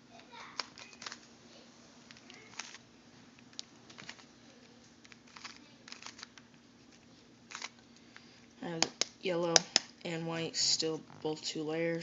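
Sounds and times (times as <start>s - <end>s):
plastic puzzle cube clicking: 0.6s - 1.2s, 5.1s - 6.4s, 7.5s - 7.7s.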